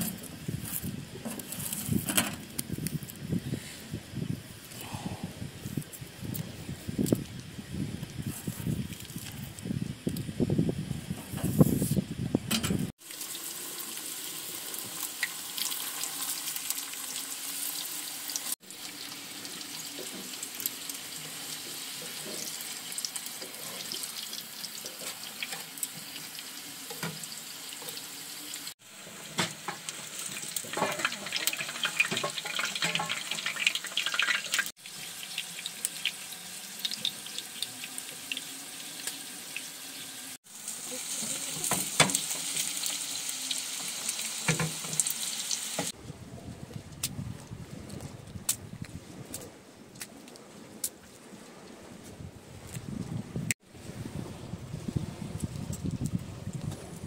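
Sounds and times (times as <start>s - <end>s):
food sizzling in a pan: 13.0s - 46.0s.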